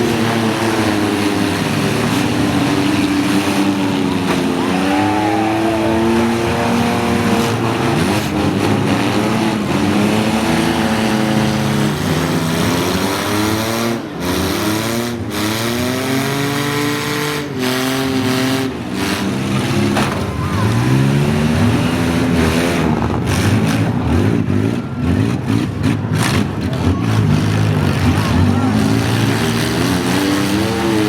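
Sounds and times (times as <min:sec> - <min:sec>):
car engines revving: 0:00.0 - 0:31.0.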